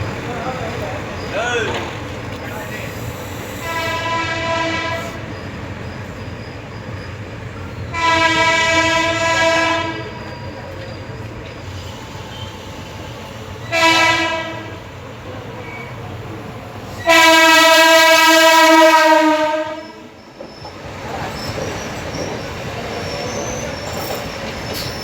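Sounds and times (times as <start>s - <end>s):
moving train rumble: 0.0s - 25.0s
locomotive horn: 3.5s - 5.3s, 7.9s - 10.2s, 13.6s - 14.9s, 16.9s - 20.1s.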